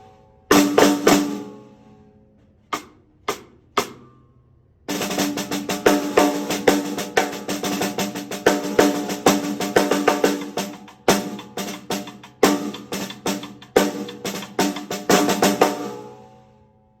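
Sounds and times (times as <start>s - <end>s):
drum kit: 0.5s - 1.5s, 2.7s - 4.1s, 4.9s - 16.1s
snare drum strokes: 2.7s - 4.1s, 4.9s - 16.0s.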